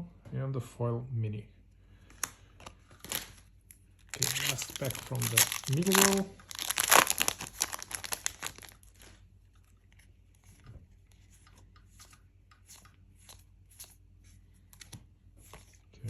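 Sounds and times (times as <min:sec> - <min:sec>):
cards being leafed through: 0:02.1 - 0:03.4, 0:04.1 - 0:09.1, 0:12.0 - 0:15.8
foil wrapper crinkling: 0:03.0 - 0:03.5, 0:04.1 - 0:09.2.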